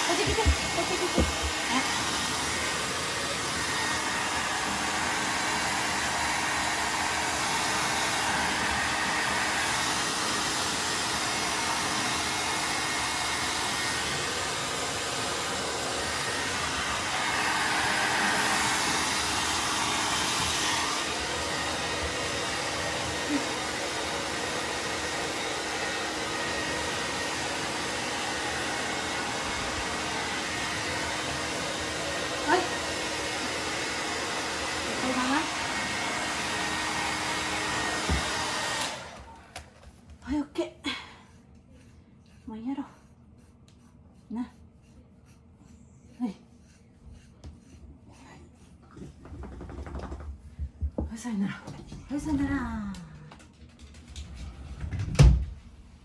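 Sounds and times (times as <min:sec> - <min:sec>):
hair dryer blowing: 0:00.0 - 0:41.3.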